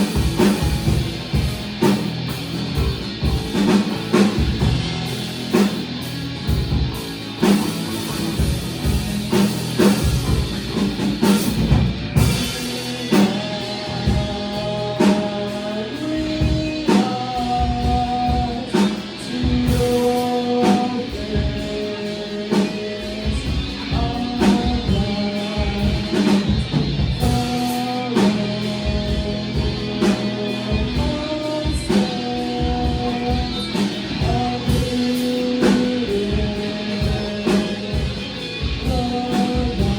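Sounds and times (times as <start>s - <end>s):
drum kit: 0.0s - 39.9s
guitars playing chords: 0.0s - 39.9s
person singing: 12.2s - 39.9s.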